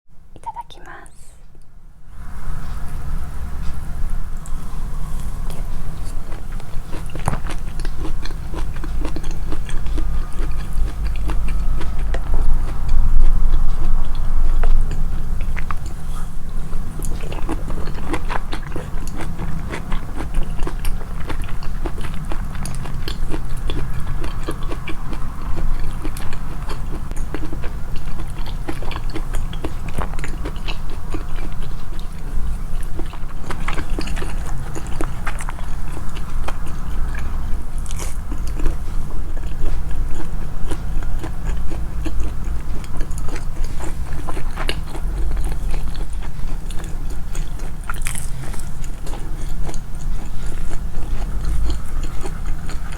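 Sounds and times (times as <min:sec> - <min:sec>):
low rumble: 0:01.9 - 0:52.9
chewing and biting food: 0:02.2 - 0:52.9.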